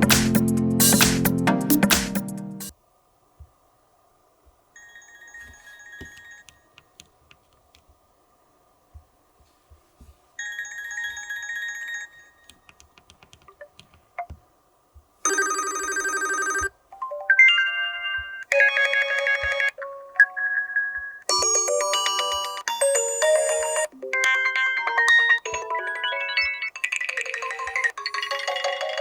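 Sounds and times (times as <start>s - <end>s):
phone ringtones: 4.8s - 6.7s, 15.2s - 29.0s.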